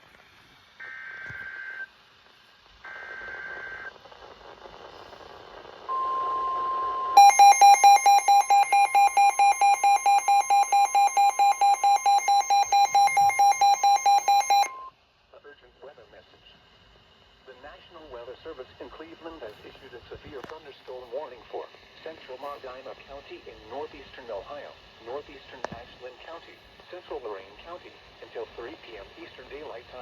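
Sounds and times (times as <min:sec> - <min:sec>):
pulsing alarm beeps: 0:05.9 - 0:14.9
steady warning alarm tone: 0:05.9 - 0:14.9.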